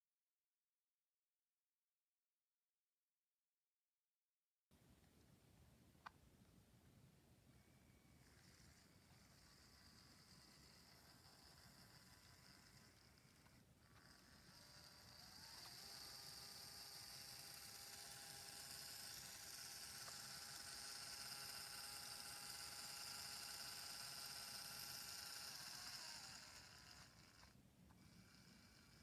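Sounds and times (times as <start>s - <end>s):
small motor whirring: 7.5s - 29.0s.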